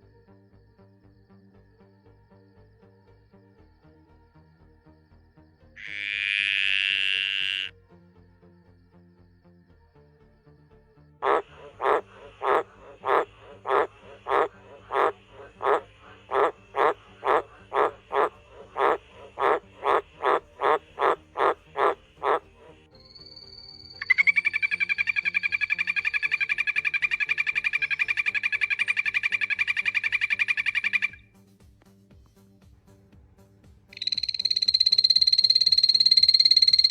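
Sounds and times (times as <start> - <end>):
frog croaking: 5.8 - 7.7, 11.2 - 31.3, 33.9 - 36.9
high fast-pulsing trill: 34.0 - 36.9.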